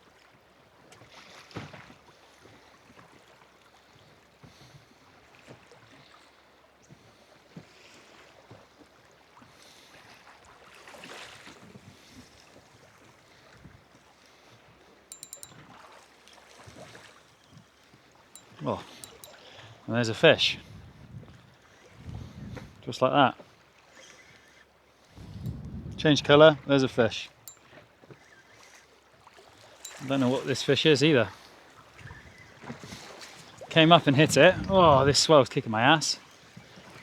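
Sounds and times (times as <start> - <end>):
sharp clicks: 15.1 - 15.6, 18.4 - 19.4
wind on microphone: 20.6 - 22.8, 25.2 - 26.7, 34.2 - 35.2.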